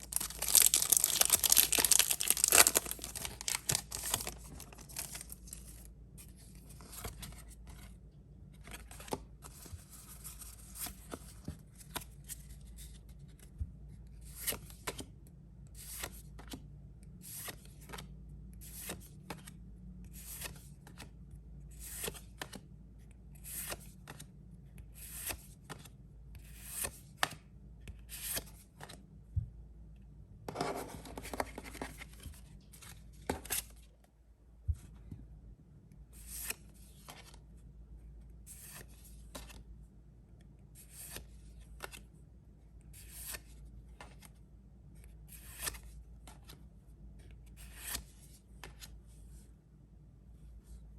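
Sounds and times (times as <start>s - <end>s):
cards rustling: 0.0s - 5.9s.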